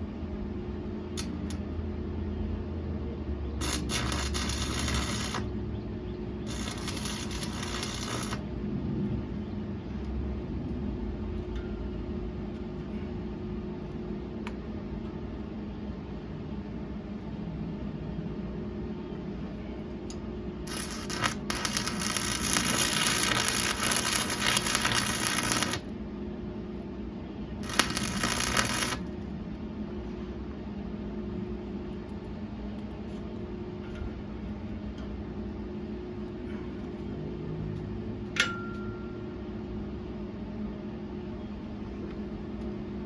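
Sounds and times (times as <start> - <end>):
machine hum: 0.0 - 43.0
welding arc crackling: 3.6 - 5.6, 6.4 - 8.4, 20.7 - 25.9, 27.6 - 29.1.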